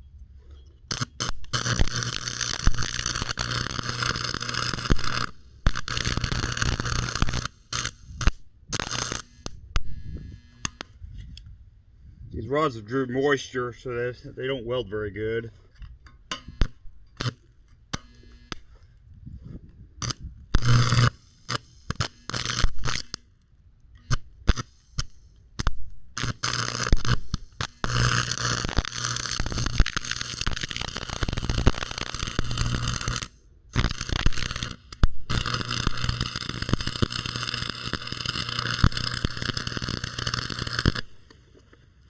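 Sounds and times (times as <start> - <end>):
welding arc crackling and sizzling: 0.9 - 11.0, 16.3 - 18.8, 20.0 - 23.3, 23.9 - 41.6.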